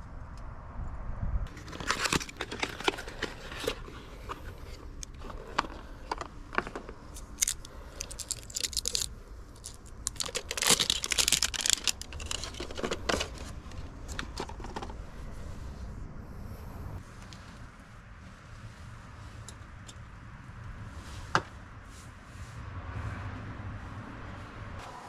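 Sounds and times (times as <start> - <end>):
paper or plastic crinkling and tearing: 1.5 - 14.9
clicks and scrapes: 1.5 - 15.0.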